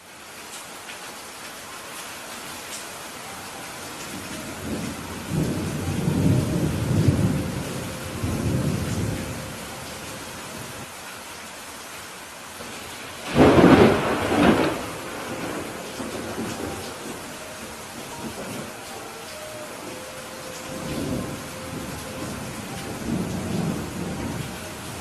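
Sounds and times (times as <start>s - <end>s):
steady rain: 0.0s - 25.0s
rolling thunder rumble: 4.1s - 10.8s, 13.2s - 18.9s, 19.9s - 25.0s
sharp thunderclap: 13.2s - 17.1s.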